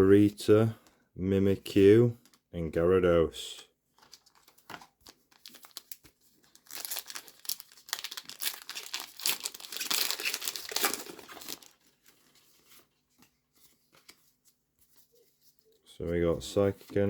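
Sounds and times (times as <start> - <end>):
foil wrapper crinkling: 4.0 - 13.0
foil being torn open: 5.3 - 11.8.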